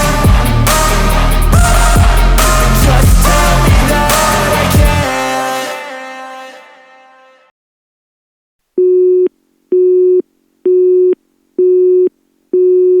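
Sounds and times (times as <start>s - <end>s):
background music: 0.0s - 7.5s
telephone busy tone: 8.8s - 13.0s.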